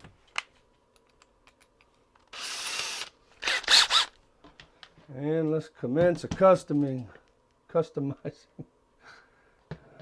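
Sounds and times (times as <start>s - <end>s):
drill motor whirring: 2.3s - 4.1s.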